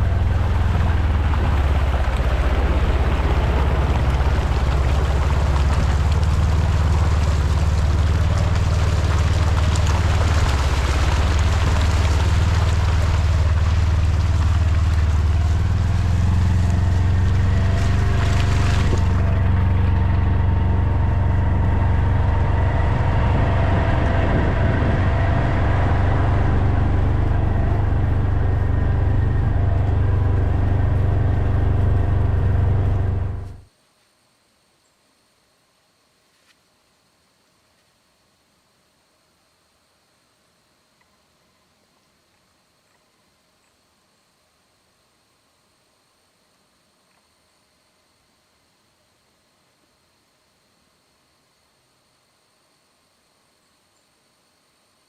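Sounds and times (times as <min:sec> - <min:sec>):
vehicle engine droning: 0:00.0 - 0:33.7.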